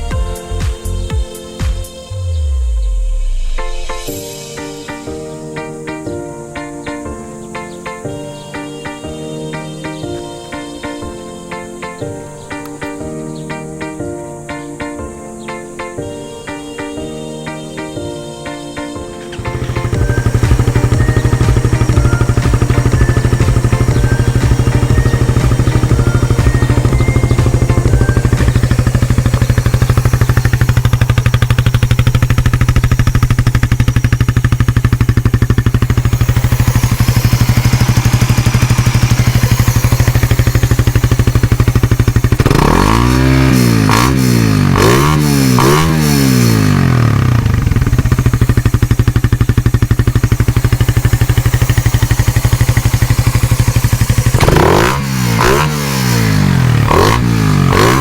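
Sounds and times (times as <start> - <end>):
motorcycle engine idling and revving: 0.0 - 4.3, 19.1 - 58.0.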